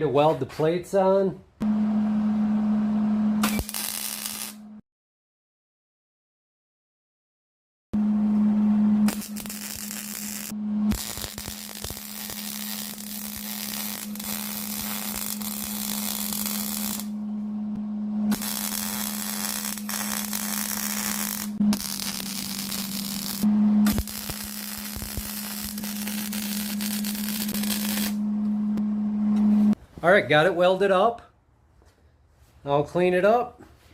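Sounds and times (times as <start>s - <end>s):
welding arc crackling hiss: 3.4s - 4.6s, 9.1s - 17.1s, 18.3s - 28.2s.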